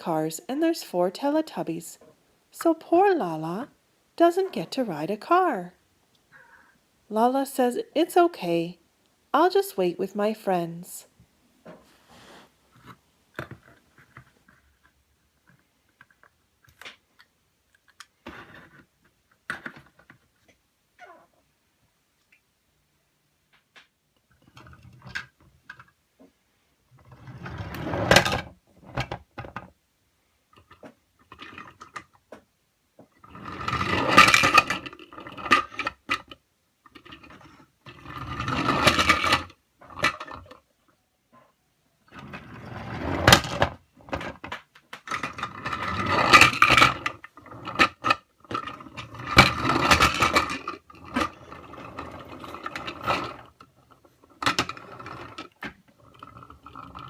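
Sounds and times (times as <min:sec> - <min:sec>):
toy car wheels rolling and scraping: 0:12.1 - 0:20.6, 0:26.9 - 0:29.7, 0:30.5 - 0:32.4, 0:33.1 - 0:40.7, 0:42.0 - 0:57.0
small clicks and rattles: 0:23.5 - 0:26.0.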